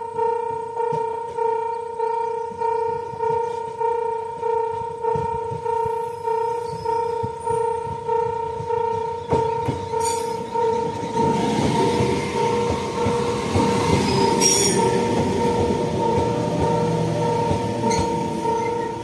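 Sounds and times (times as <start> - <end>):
train wheels clicking over rails: 8.6 - 19.0.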